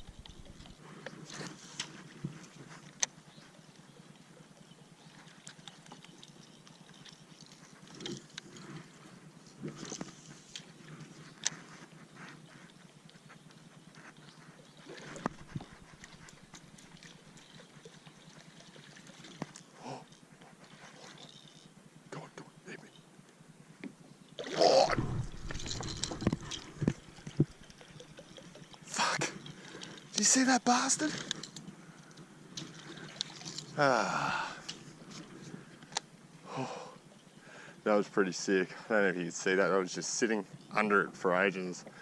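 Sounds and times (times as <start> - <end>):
water splashing: 14.6 - 20.0, 24.4 - 31.3, 32.6 - 35.1
fishing gear knocking and clicking: 25.0 - 28.7.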